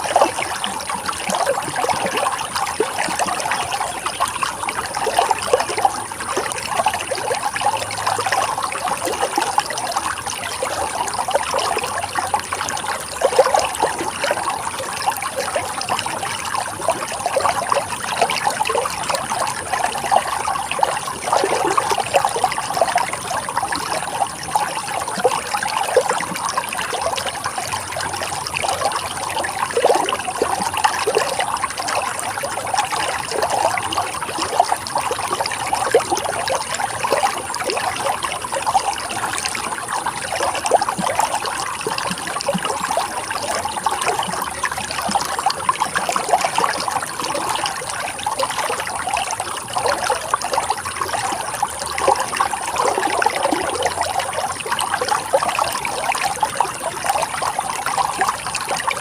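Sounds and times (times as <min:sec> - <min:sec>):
water trickling over stones: 0:00.0 - 0:59.0.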